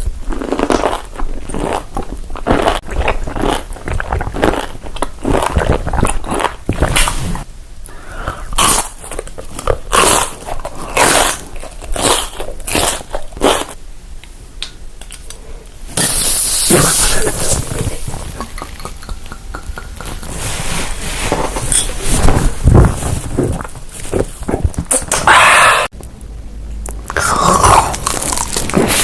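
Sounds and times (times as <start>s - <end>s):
person biting and chewing: 0.0s - 7.4s, 8.4s - 13.8s, 26.8s - 29.0s.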